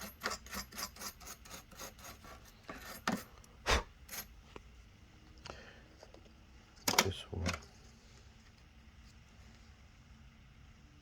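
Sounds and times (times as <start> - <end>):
brush scrubbing a fan: 0.0 - 3.4.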